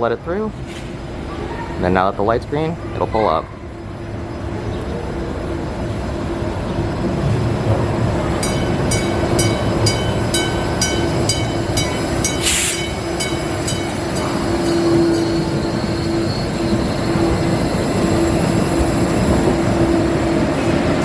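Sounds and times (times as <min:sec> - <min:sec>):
light rail motor hum: 0:08.0 - 0:21.0
tram bell dinging: 0:08.2 - 0:20.4
air hiss: 0:12.4 - 0:12.9.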